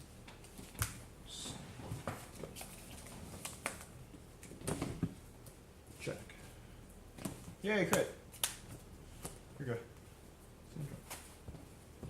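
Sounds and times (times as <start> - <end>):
cards snapping and tapping: 3.4 - 4.6, 7.9 - 9.4.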